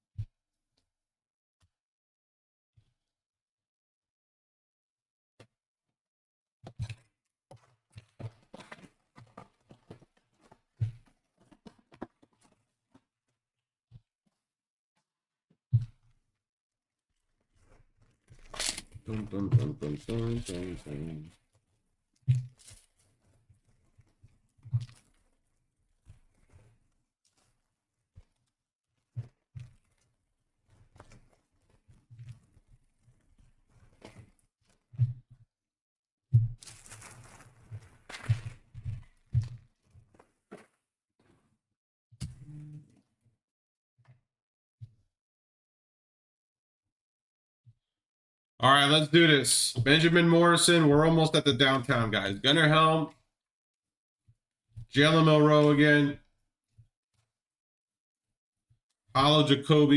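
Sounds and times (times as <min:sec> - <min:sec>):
packaging tearing: 0:18.3 - 0:19.0, 0:36.6 - 0:38.3
card packs rustling: 0:36.6 - 0:38.5.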